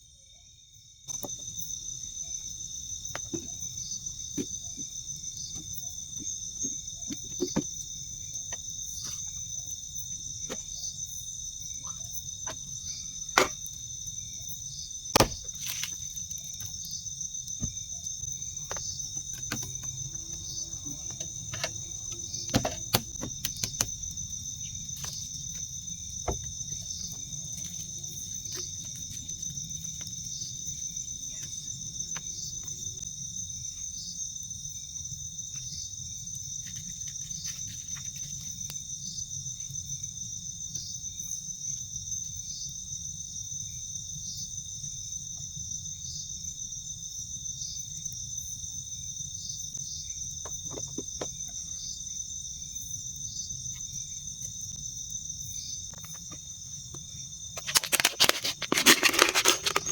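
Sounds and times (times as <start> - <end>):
pulsing insect call: 0.0 - 42.7
insects chirring: 0.0 - 59.9.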